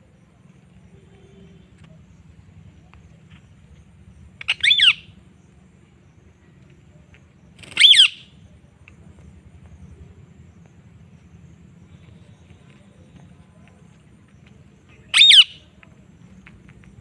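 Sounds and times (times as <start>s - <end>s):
parrot calling: 4.4s - 5.1s, 7.8s - 8.3s, 15.1s - 15.6s.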